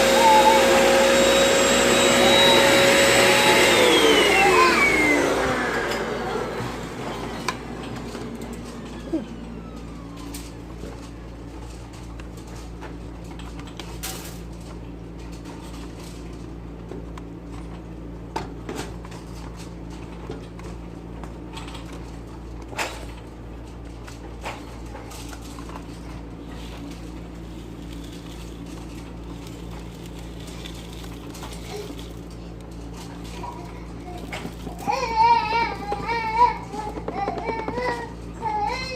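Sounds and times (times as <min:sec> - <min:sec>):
vacuum cleaner humming: 0:00.0 - 0:11.6
debris crackling in vacuum: 0:26.5 - 0:32.4.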